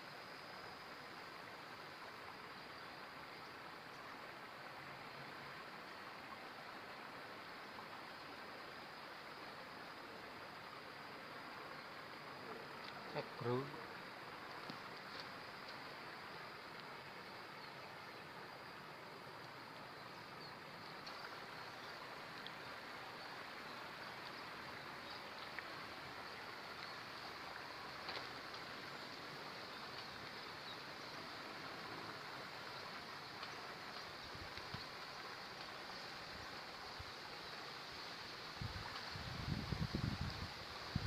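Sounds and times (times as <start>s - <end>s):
river water rushing: 0.0s - 41.0s
faint ticks: 12.5s - 13.6s, 14.4s - 16.0s, 16.6s - 17.7s, 19.3s - 19.6s, 20.8s - 22.7s, 24.1s - 29.0s, 29.6s - 31.0s, 31.9s - 37.2s, 38.7s - 39.2s.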